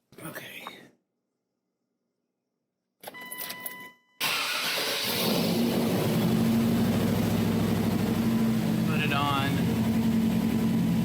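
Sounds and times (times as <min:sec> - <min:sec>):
engine cranking and idling: 0:04.2 - 0:11.0.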